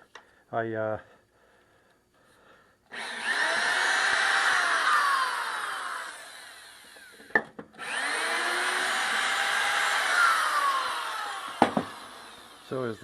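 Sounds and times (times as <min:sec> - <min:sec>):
power drill motor running: 0:02.9 - 0:13.0.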